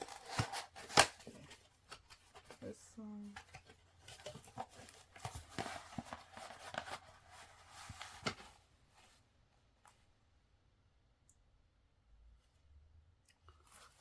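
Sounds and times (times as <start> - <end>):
paper and plastic packaging rustling: 0.0 - 9.2.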